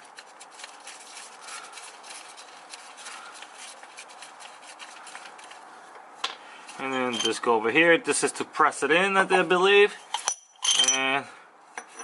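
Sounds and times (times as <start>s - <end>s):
metal parts rubbing and clicking: 10.0s - 11.0s.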